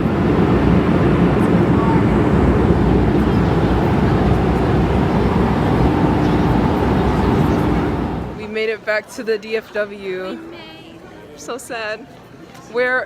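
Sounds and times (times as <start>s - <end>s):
faint low hum: 0.0s - 8.6s
jet airliner cabin noise: 0.0s - 8.7s.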